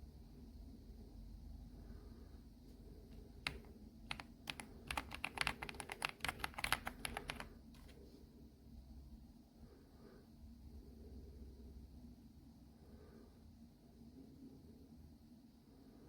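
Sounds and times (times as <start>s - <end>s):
mechanical keyboard typing: 3.4s - 7.9s.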